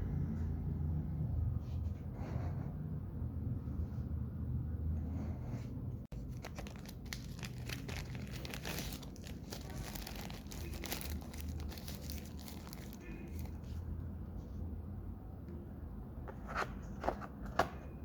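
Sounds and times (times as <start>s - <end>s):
packaging crinkling: 6.1s - 13.6s.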